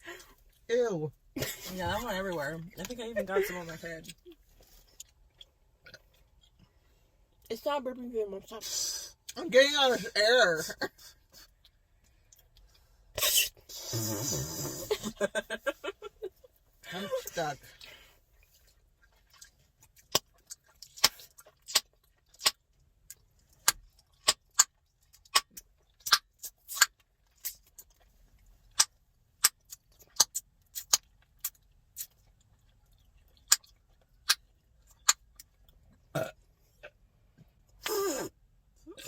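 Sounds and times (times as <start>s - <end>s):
chewing gum snapping: 19.1s - 28.1s, 28.7s - 35.8s.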